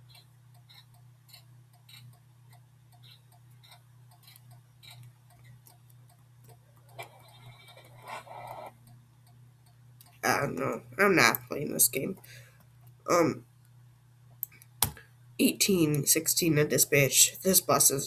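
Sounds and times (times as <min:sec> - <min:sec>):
flasher relay ticking: 0:00.0 - 0:07.7, 0:08.4 - 0:10.6
steady low hum: 0:00.0 - 0:18.0.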